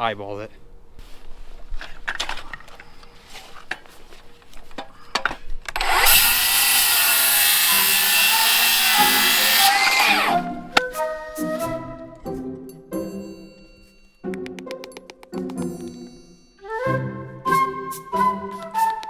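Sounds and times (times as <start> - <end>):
power tool running: 5.8 - 10.4.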